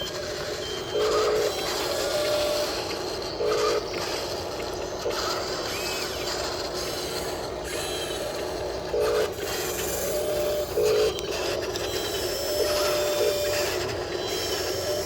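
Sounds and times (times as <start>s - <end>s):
small electric motors whirring: 0.0s - 15.0s.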